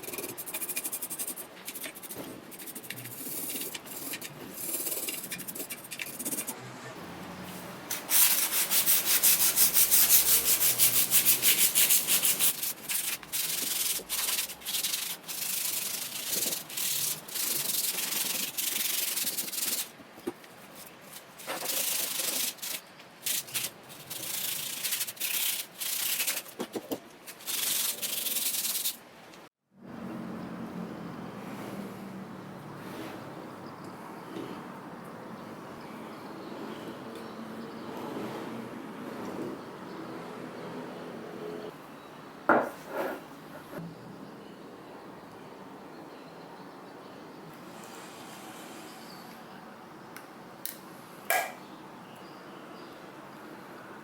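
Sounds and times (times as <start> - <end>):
sandpaper rubbing metal: 0.0 - 6.6, 7.9 - 19.9, 20.8 - 26.6, 27.3 - 29.0.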